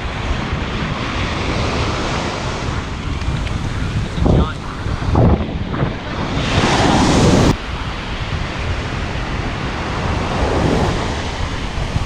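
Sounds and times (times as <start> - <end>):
ocean surf washing on beach: 0.0 - 12.0
wind buffeting microphone: 0.0 - 12.0
hissing wash: 3.6 - 8.0, 8.6 - 12.0.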